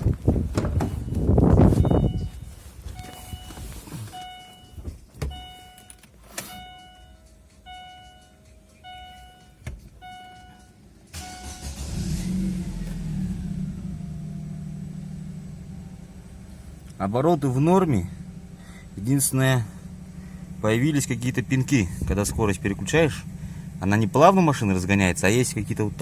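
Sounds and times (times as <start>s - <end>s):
car engine starting and idling: 0.0s - 26.0s
car warning chime beeping: 0.8s - 12.2s.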